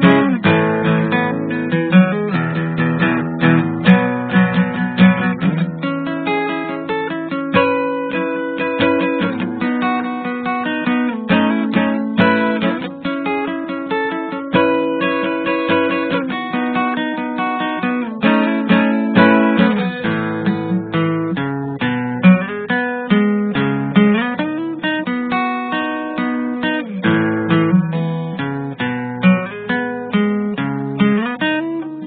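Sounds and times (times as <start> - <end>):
acoustic guitar music: 0.0 - 32.0.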